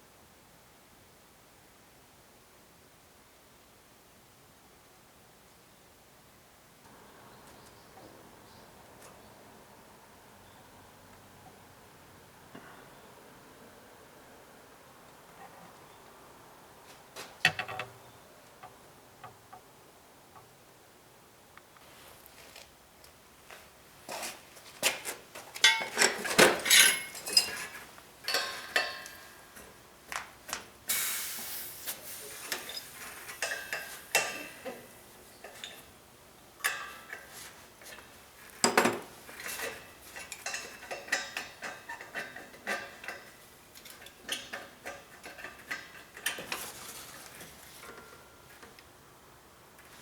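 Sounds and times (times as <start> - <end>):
short hiss: 30.9 - 34.6.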